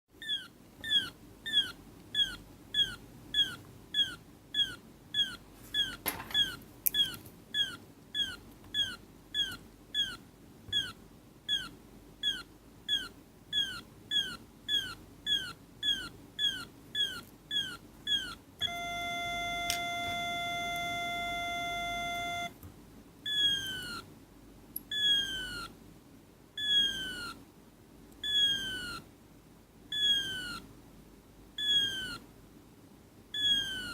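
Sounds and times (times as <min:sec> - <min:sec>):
steady electronic beep: 0:18.6 - 0:22.6.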